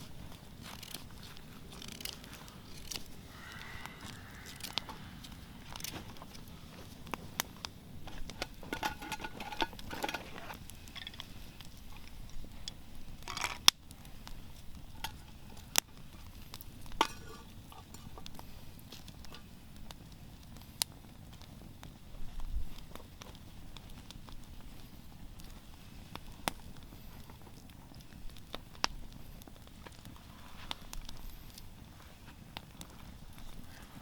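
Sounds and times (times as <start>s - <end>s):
small objects clicking and knocking: 0.0s - 6.5s, 8.0s - 13.8s, 14.8s - 19.5s.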